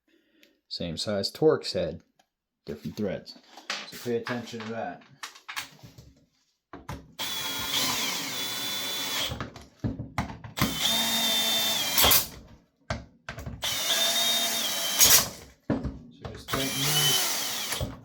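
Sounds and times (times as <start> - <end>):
power drill driving bolts: 7.2 - 9.4, 10.6 - 12.4, 13.6 - 15.4, 16.5 - 18.0.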